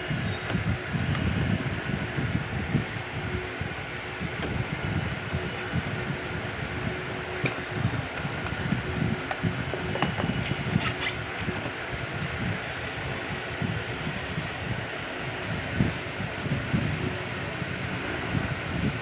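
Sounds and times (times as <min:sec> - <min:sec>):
ceiling fan humming: 0:00.0 - 0:19.0.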